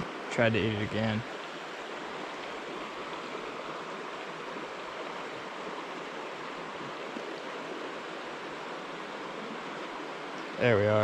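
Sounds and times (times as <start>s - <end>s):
stream flowing over rocks: 0.0s - 11.0s.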